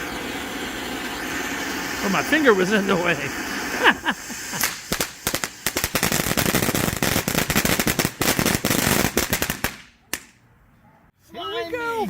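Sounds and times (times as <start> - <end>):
fountain firework crackling: 0.0 - 10.2.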